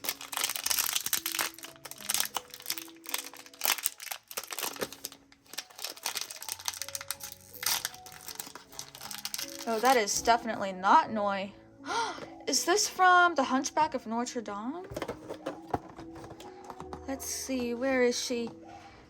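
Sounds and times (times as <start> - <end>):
packaging crinkling: 0.0 - 10.2, 14.8 - 17.0
soft background music: 0.0 - 19.0.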